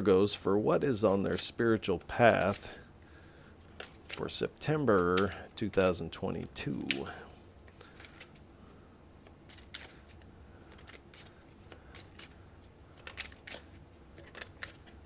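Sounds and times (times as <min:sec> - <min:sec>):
cards being shuffled: 0:00.7 - 0:02.8, 0:03.6 - 0:08.5, 0:09.2 - 0:15.0.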